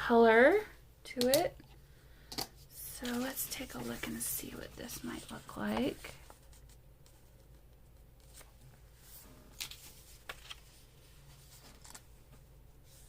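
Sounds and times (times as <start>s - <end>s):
paper pages rustling: 3.0s - 13.0s.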